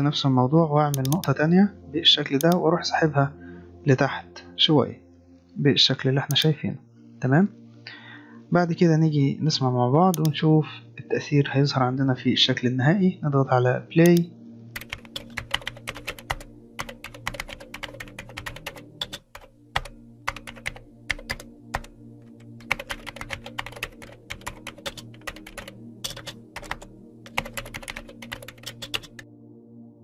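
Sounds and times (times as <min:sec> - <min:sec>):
keyboard typing clicks: 0:00.9 - 0:01.4, 0:02.4 - 0:02.6, 0:10.2 - 0:10.4, 0:14.8 - 0:29.2.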